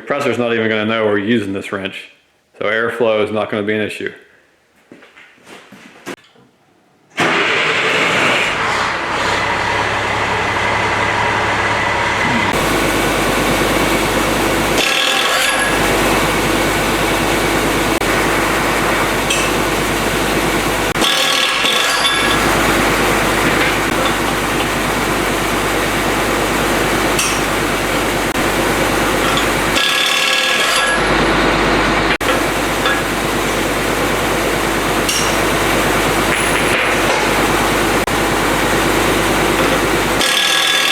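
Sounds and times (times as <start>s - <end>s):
pneumatic impact wrench hammering: 14.7s - 16.3s, 20.9s - 24.8s, 29.2s - 31.1s, 39.6s - 40.9s.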